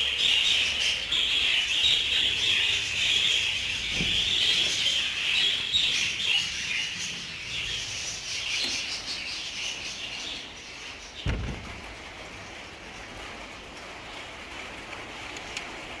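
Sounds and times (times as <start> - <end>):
budgerigars chattering: 0.0 - 11.2.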